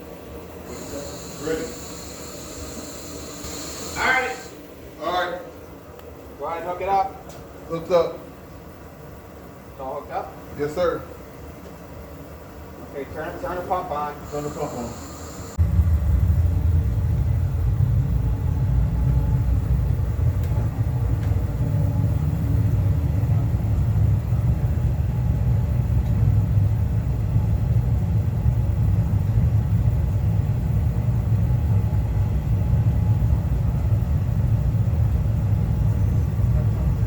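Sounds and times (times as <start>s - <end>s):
pump running with low rumble: 0.0s - 8.3s, 11.9s - 37.0s.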